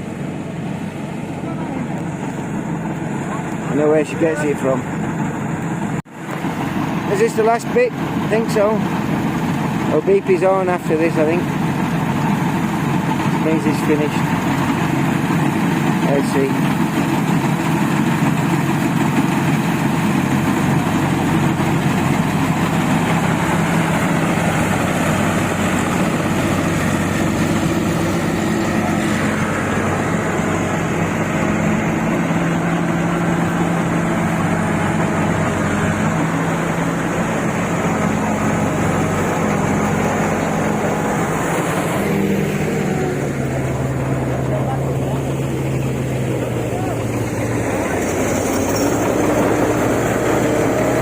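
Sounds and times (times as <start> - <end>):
combine harvester engine running: 0.0 - 51.0.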